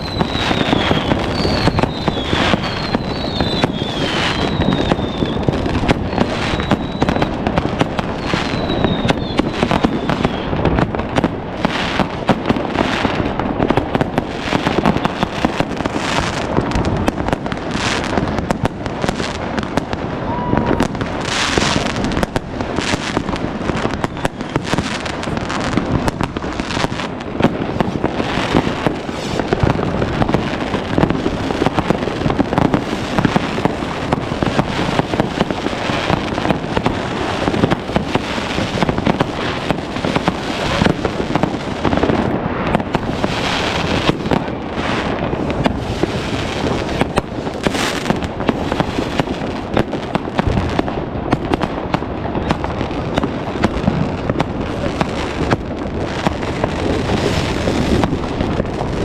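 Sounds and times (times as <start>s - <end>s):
fireworks bangs and crackles: 0.0s - 59.0s.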